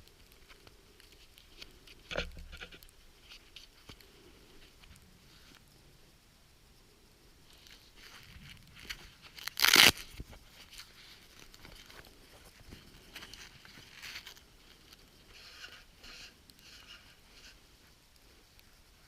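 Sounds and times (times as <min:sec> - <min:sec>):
crinkly material rustling: 0:07.5 - 0:19.0
harsh scrape or tear: 0:08.0 - 0:10.8.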